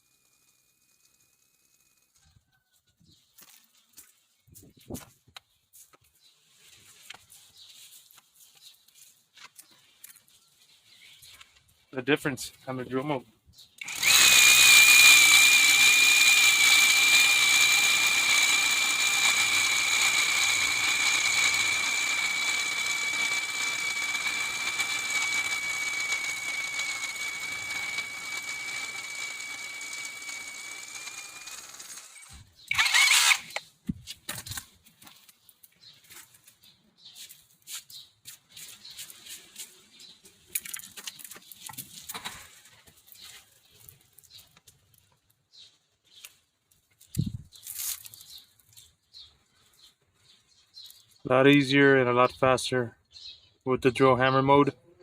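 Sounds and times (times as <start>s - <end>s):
rotary hammer whining: 0.0s - 2.2s, 13.8s - 34.6s.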